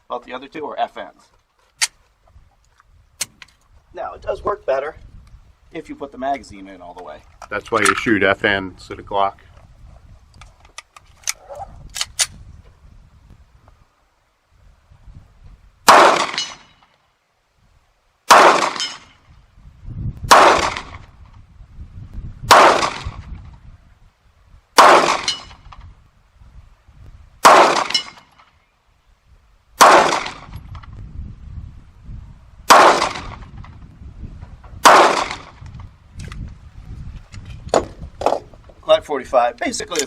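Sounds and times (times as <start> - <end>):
pistol shots: 15.9 - 16.8, 18.3 - 19.2, 20.3 - 21.0, 22.5 - 23.2, 24.8 - 25.6, 27.4 - 28.3, 29.8 - 30.6, 32.7 - 33.5, 34.8 - 35.6.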